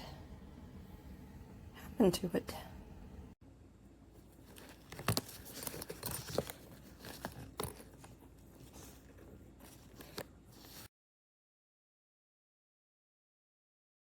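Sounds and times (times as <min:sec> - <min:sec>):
plastic suitcase clicks and scrapes: 0:04.5 - 0:08.2.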